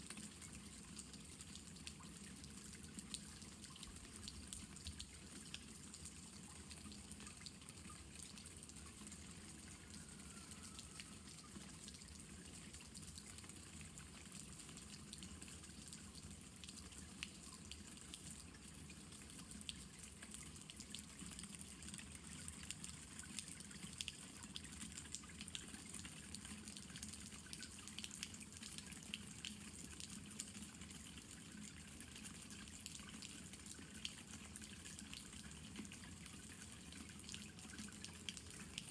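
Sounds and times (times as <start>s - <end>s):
light rain: 0.0s - 38.9s
raindrops dripping and ticking: 0.0s - 38.9s.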